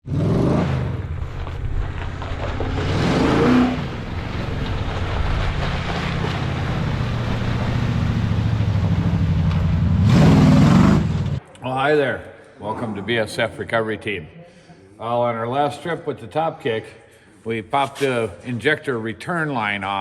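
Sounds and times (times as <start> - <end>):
vehicle engine running: 0.0 - 11.4.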